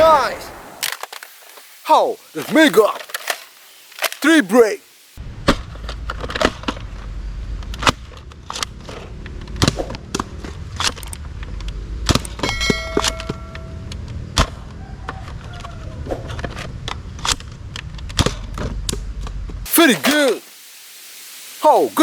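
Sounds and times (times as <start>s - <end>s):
brief ringing tone: 12.5s - 13.9s.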